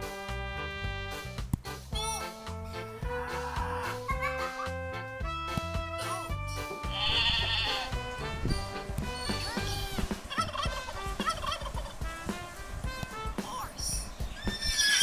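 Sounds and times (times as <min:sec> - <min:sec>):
background music: 0:00.0 - 0:15.0
turkey gobbling: 0:09.7 - 0:12.0.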